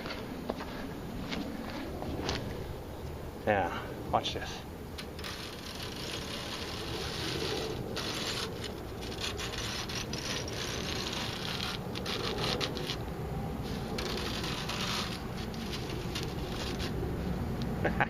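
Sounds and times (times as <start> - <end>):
hands scraping metal fins: 5.0 - 17.0.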